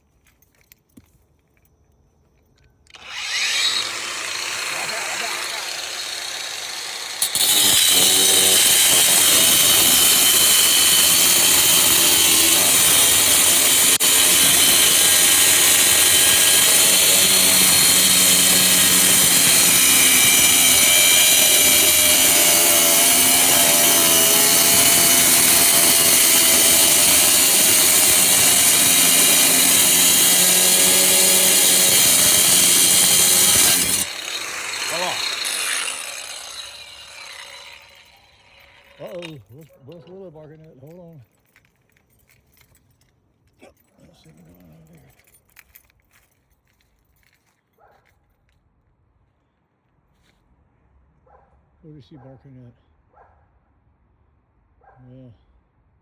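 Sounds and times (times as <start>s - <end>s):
grinder winding down: 2.9s - 40.0s
angle grinder cutting metal: 2.9s - 40.1s.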